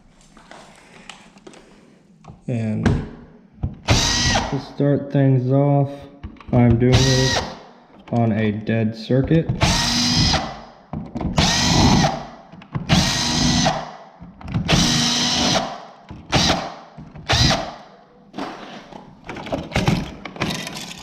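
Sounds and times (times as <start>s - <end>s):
power drill whining: 3.9s - 4.6s, 7.0s - 7.6s, 9.6s - 10.5s, 11.4s - 12.2s, 12.9s - 13.8s, 14.7s - 15.6s, 17.3s - 17.7s.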